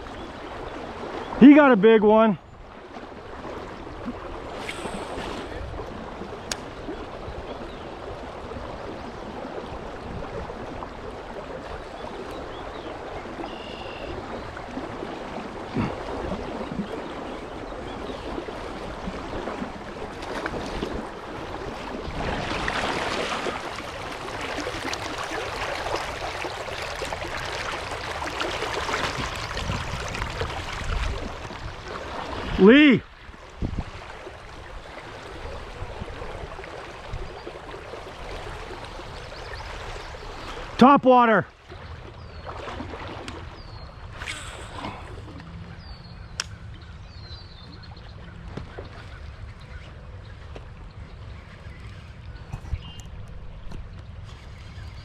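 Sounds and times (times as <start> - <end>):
creek water running over rocks: 3.1 - 43.5.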